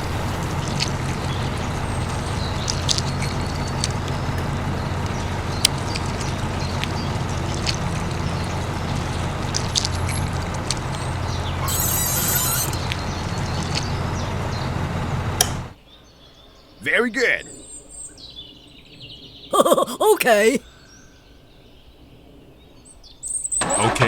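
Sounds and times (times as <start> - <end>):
small electric motor humming: 11.6 - 12.8.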